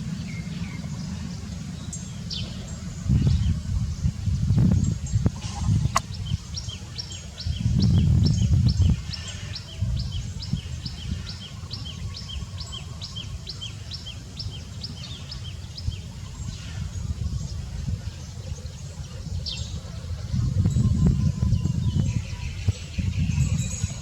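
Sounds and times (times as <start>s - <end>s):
bird chirping: 0.0s - 17.6s.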